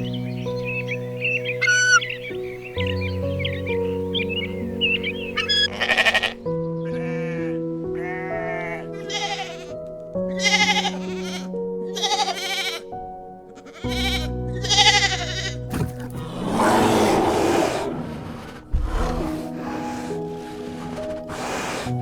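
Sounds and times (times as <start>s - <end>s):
soft background music: 0.0s - 22.0s
animal bleating: 1.6s - 2.1s, 5.4s - 12.9s, 13.5s - 18.0s.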